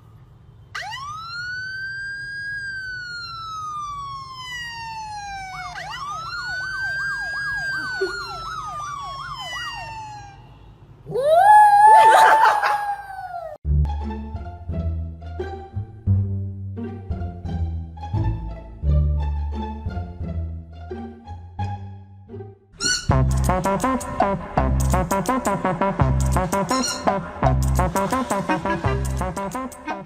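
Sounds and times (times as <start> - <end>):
emergency siren wailing: 0.7 - 13.6
fast warbling siren yelp: 0.8 - 13.6, 26.5 - 27.2.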